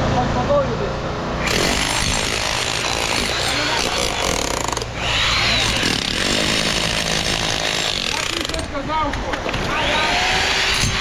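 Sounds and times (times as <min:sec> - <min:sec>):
handheld power tool running: 0:01.4 - 0:08.7.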